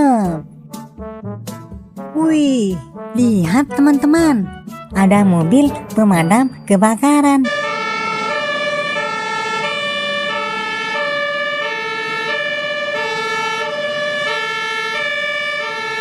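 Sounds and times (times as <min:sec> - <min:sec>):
toy fire engine siren: 0:07.4 - 0:16.0.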